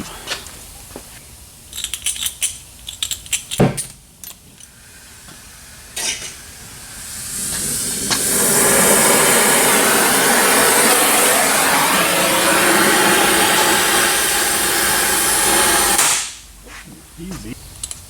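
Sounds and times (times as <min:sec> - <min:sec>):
shop tool hissing roar: 0:04.6 - 0:16.3.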